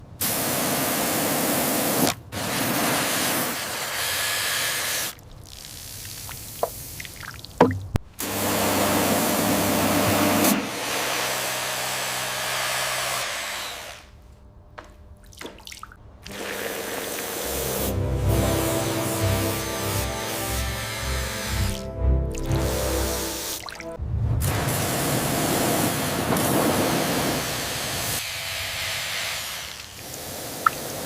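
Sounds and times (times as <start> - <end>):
loud hissing spray: 0.2 - 5.1, 16.4 - 21.7, 24.5 - 31.0.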